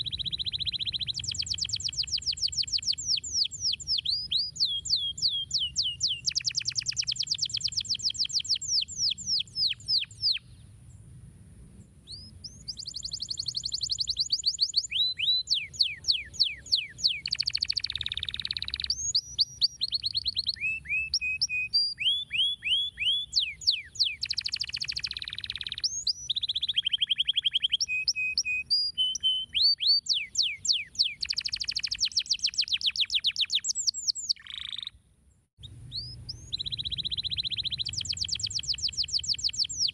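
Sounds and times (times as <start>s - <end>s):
canary singing trills: 0.0s - 10.6s, 12.1s - 35.0s, 35.6s - 39.9s.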